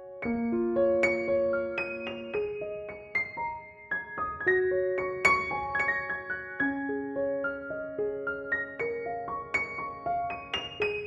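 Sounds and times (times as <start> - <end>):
soft piano melody: 0.0 - 11.0.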